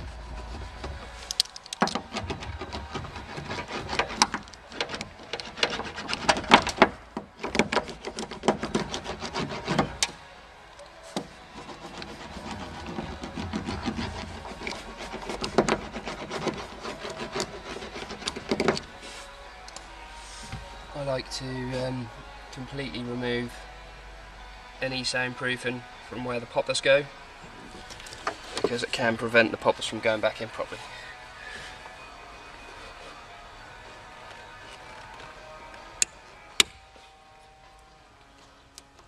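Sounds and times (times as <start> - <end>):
scratchy rubbing on metal panel: 0.0 - 6.8, 7.4 - 10.2, 11.0 - 19.2.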